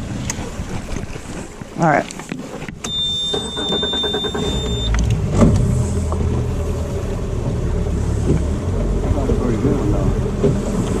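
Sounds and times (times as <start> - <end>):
outboard motor running: 0.0 - 11.0
high steady beep: 2.9 - 5.0.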